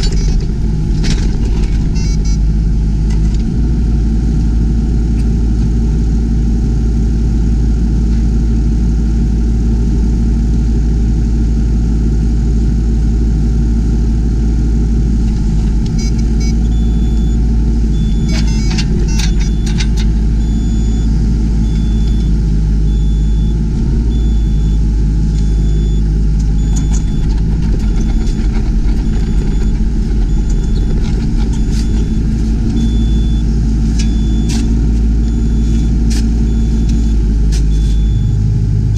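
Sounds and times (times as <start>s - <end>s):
metal clanks and knocks: 0.0s - 2.3s, 18.2s - 20.2s, 26.6s - 33.0s
excavator diesel engine running: 0.0s - 38.9s
high electronic beep: 2.0s - 2.4s, 15.9s - 17.4s, 18.0s - 21.1s, 24.1s - 24.8s, 25.4s - 27.3s, 29.1s - 35.9s, 36.5s - 38.4s.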